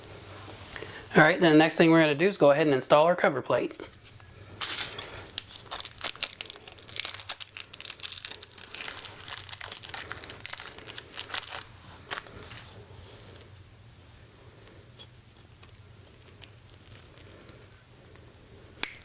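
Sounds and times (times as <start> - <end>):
plastic packaging crinkling: 3.9 - 13.6, 15.3 - 17.8.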